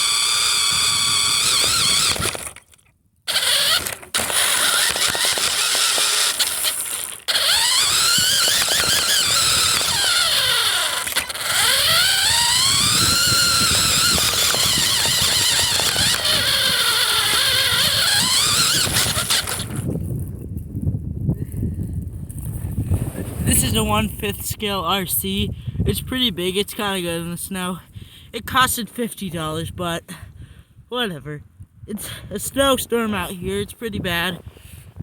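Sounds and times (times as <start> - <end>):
toy car motor whining: 0.0 - 19.9.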